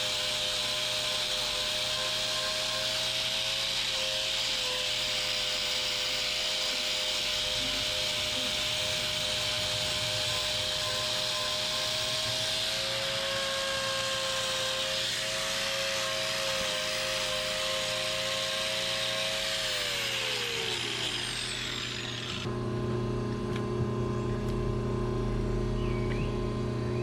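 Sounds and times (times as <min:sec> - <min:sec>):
power grinder whining: 0:00.0 - 0:22.6
steady low hum: 0:21.6 - 0:27.0.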